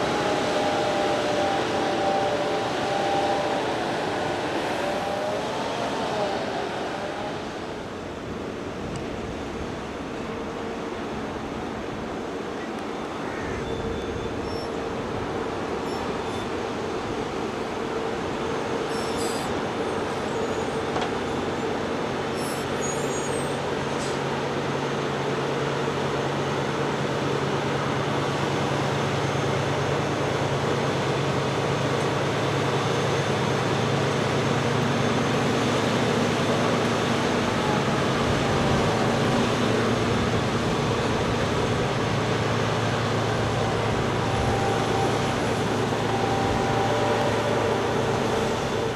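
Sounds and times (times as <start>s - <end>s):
diesel farm machinery running: 27.8s - 48.9s.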